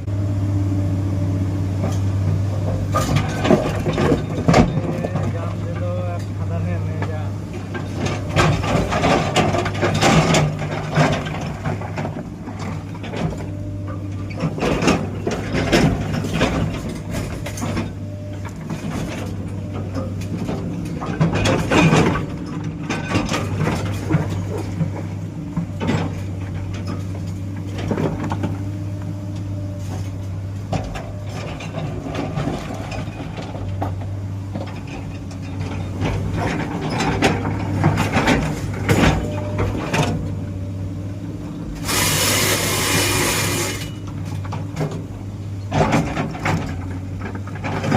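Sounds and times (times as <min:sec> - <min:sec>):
heavy diesel engine running: 0:00.0 - 0:47.9
metal clanks and knocks: 0:01.8 - 0:28.6, 0:29.8 - 0:40.4, 0:43.2 - 0:47.9.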